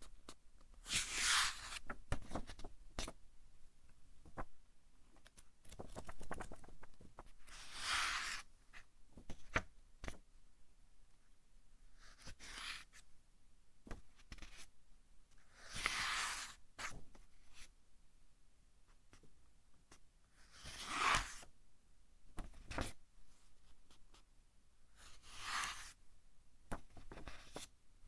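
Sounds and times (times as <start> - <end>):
book pages turning: 0.9 - 2.7, 5.6 - 6.8
paper rustles and taps: 5.2 - 7.3.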